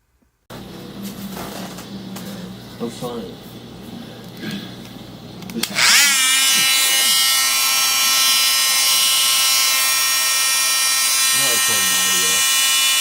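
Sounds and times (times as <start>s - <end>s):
power tool motor whining: 5.6s - 13.0s.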